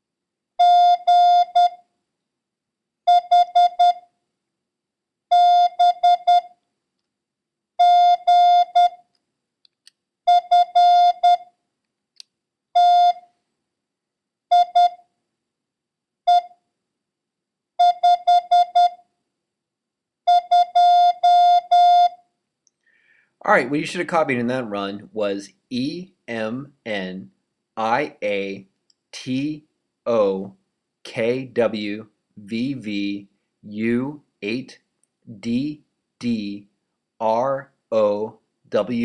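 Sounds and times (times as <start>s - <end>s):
morse code beeps: 3.1s - 4.0s, 5.3s - 6.5s, 10.3s - 11.4s, 14.5s - 15.0s, 17.8s - 19.0s, 20.3s - 22.1s.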